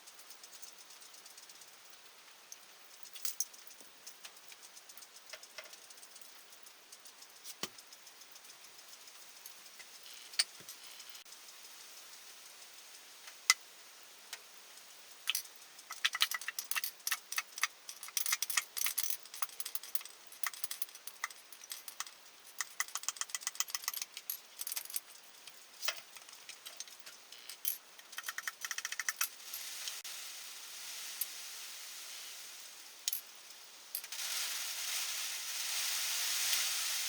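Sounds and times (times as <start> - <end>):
metal clinks and rattles: 2.4 - 11.2, 15.3 - 29.6
ratchet wrench clicking: 15.3 - 25.2, 25.8 - 29.3.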